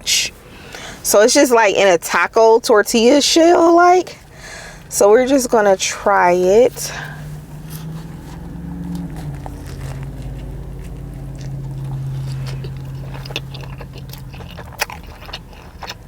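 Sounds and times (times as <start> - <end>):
steady low hum: 0.0 - 16.0
biting and chewing food: 6.9 - 16.0
crunchy clicks of breading: 9.4 - 16.0.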